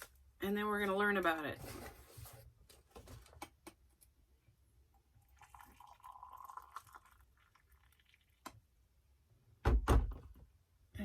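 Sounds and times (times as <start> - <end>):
soft liquid sound: 5.1 - 8.6.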